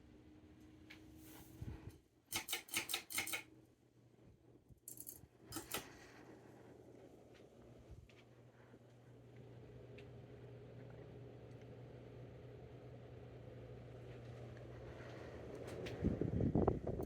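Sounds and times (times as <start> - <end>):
faint steady hum: 3.4 - 17.0.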